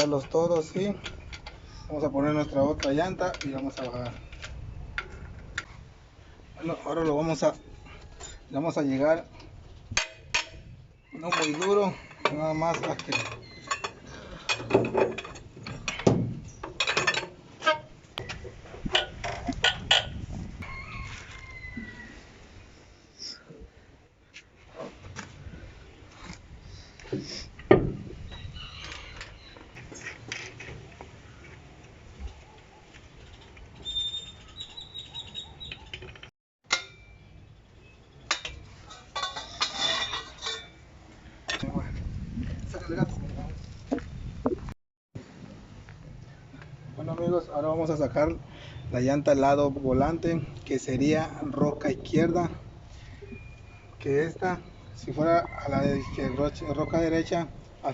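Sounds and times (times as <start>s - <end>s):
lug wrench clinking on wheel nuts: 10.0s - 18.0s.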